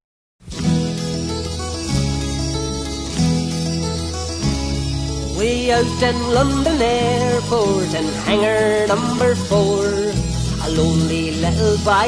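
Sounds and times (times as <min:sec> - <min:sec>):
instrumental music with held chords: 0:00.4 - 0:12.0.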